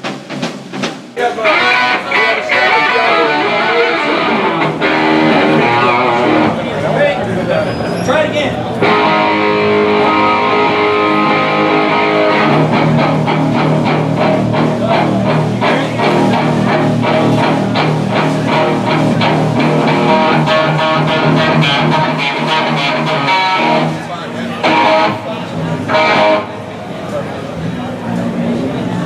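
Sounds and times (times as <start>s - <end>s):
driving drum beat: 0.0s - 6.6s, 8.8s - 25.2s
electric guitar: 0.0s - 7.6s, 8.5s - 29.0s
pulsing bass guitar line: 1.2s - 7.6s, 8.6s - 29.0s.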